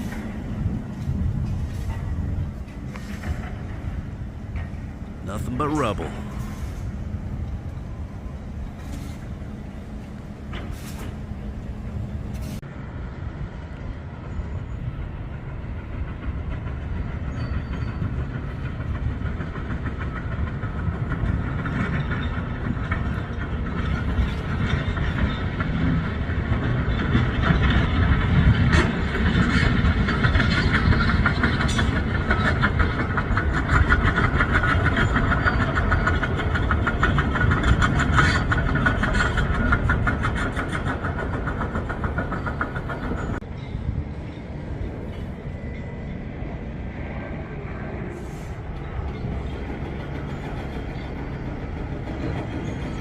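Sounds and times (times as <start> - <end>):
heavy construction machinery rattling: 16.0 - 43.5.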